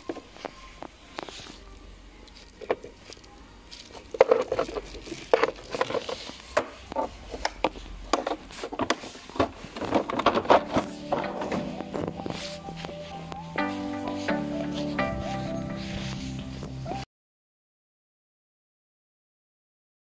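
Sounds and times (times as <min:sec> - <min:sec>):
tool clicks and scraping: 0:02.3 - 0:12.3.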